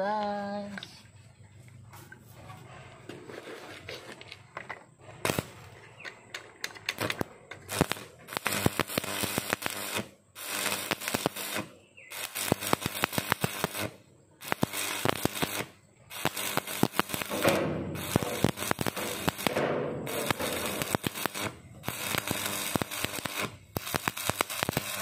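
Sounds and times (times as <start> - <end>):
welding arc crackling: 5.2 - 5.7, 6.4 - 25.0.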